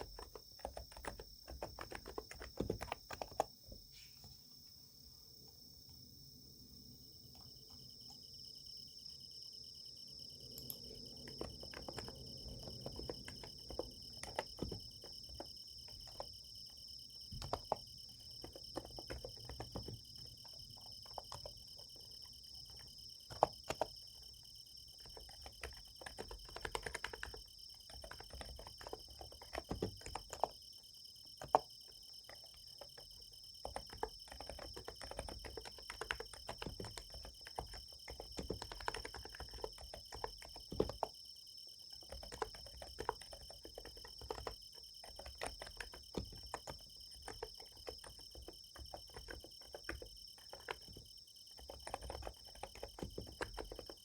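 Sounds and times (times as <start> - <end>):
soft keyboard key clicks: 0.0 - 3.5
night insects chirring: 0.0 - 54.0.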